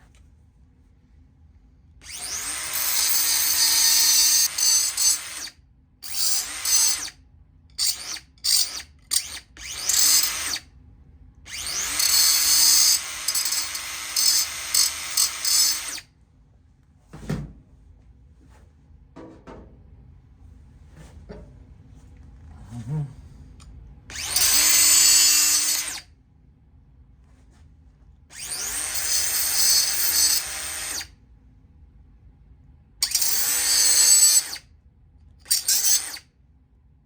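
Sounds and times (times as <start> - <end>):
handheld power tool running: 2.0 - 5.5, 6.1 - 7.1, 7.8 - 10.6, 11.5 - 16.0, 24.1 - 26.0, 28.3 - 31.1, 33.0 - 34.6, 35.5 - 36.2
thump: 17.1 - 17.6.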